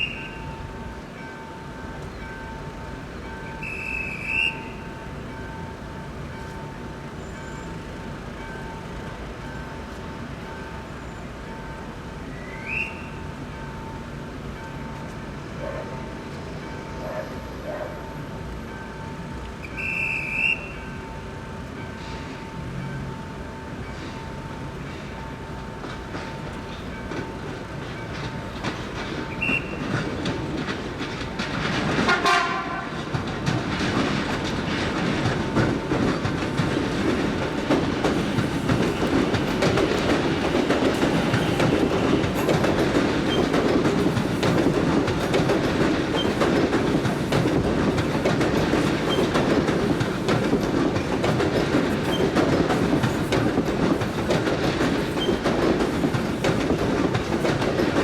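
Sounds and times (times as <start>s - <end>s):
train cars rumbling past: 0.0s - 58.0s
train wheels clickety-clack: 1.2s - 13.8s, 14.5s - 20.9s, 23.7s - 58.0s
train horn falling in pitch: 32.1s - 33.0s.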